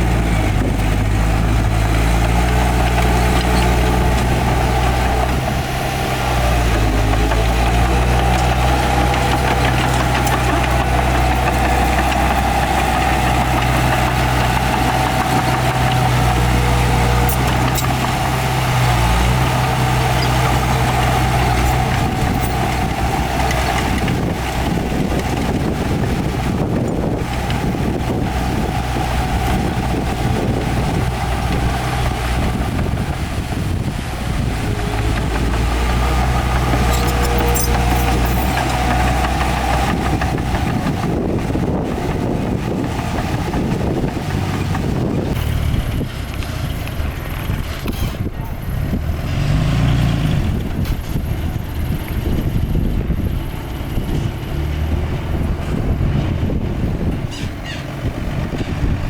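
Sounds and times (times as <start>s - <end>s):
diesel machinery engine drone: 0.0s - 59.0s.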